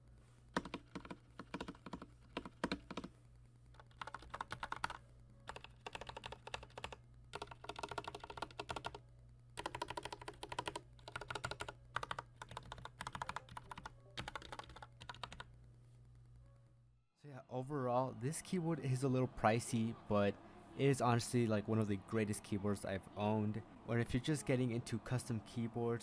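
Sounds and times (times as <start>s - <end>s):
mechanical keyboard typing: 0.6s - 3.1s, 3.7s - 9.0s, 9.6s - 15.5s
steady low hum: 15.4s - 26.0s.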